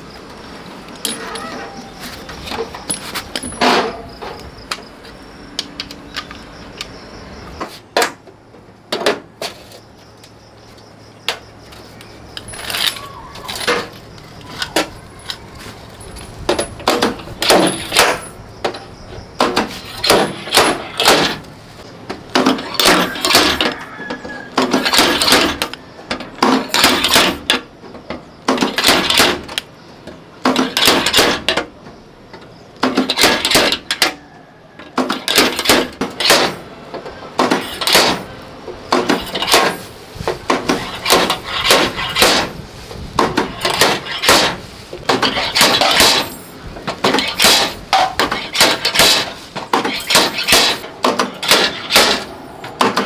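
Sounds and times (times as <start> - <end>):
sharp knocks and clinks: 1.0 - 4.9, 11.2 - 21.5.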